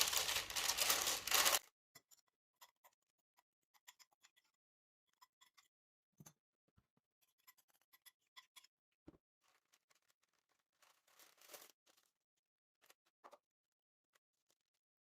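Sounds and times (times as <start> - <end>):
scraping or rustling: 0.0 - 1.6.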